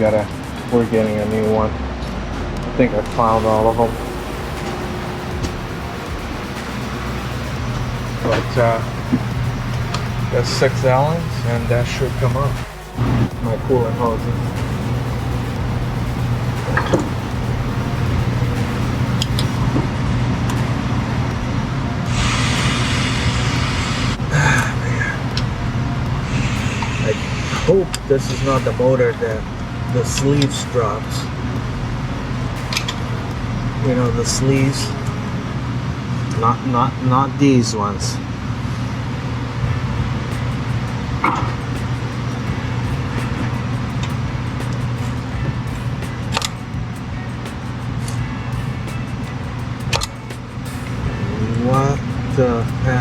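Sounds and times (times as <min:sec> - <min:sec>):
low mechanical drone: 0:00.0 - 0:53.0
hiss: 0:22.0 - 0:25.4, 0:26.1 - 0:34.9.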